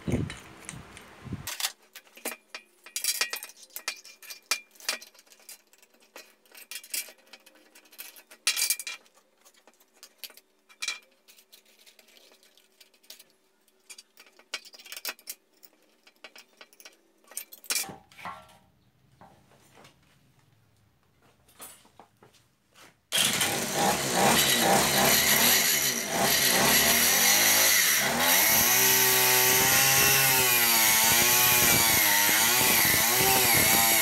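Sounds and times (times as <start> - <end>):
metal tools clinking and knocking: 1.5 - 18.6.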